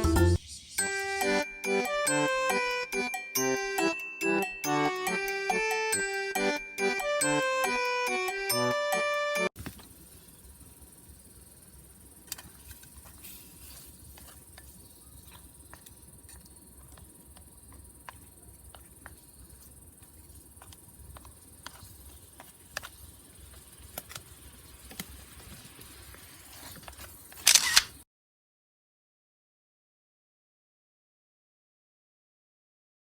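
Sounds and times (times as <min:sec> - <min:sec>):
short burst of noise: 0:00.1 - 0:01.9.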